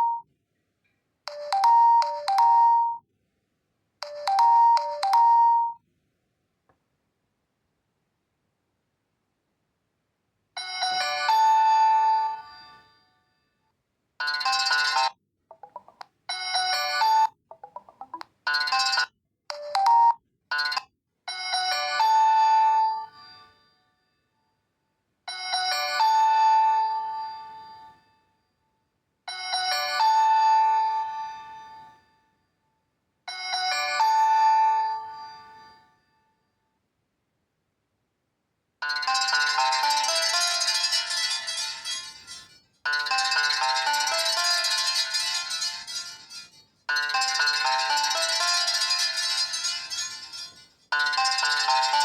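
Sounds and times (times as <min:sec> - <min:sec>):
bell-like phone chime: 0:00.0 - 0:00.2, 0:01.3 - 0:03.0, 0:04.0 - 0:05.8, 0:10.6 - 0:13.1, 0:14.2 - 0:23.7, 0:29.3 - 0:32.1, 0:33.3 - 0:36.4, 0:38.8 - 0:52.0.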